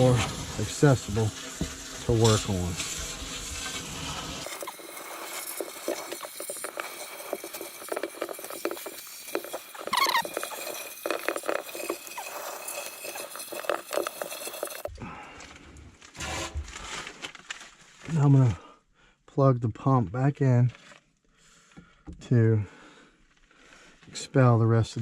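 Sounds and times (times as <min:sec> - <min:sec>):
short squeak: 0:09.6 - 0:14.3.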